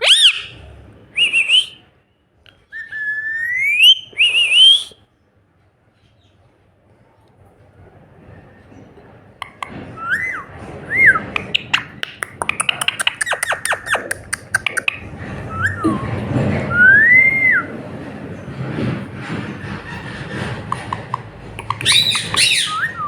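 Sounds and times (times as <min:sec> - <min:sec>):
parrot whistling: 0:00.0 - 0:00.6, 0:09.4 - 0:17.7, 0:20.7 - 0:23.0
parrot clicking: 0:09.4 - 0:09.8, 0:11.4 - 0:15.1, 0:20.6 - 0:22.9.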